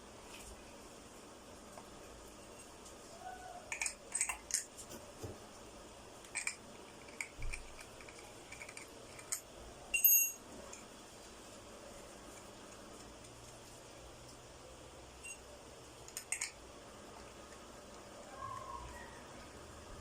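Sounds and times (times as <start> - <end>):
ringing metallic clink: 9.9 - 10.4.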